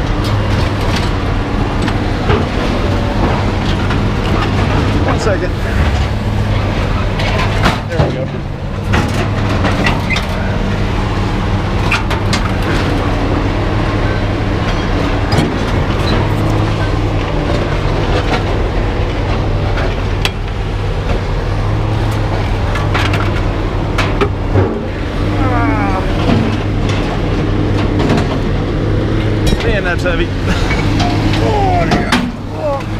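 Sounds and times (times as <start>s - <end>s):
engine running with low hum: 0.0s - 32.9s
metal knocks and clanks: 0.2s - 10.8s, 26.2s - 32.9s.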